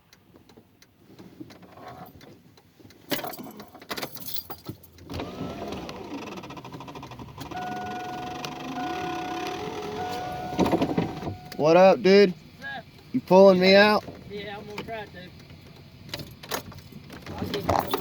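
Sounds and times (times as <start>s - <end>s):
engine rumble: 0.1s - 18.0s
electronic warning tone: 7.5s - 11.8s.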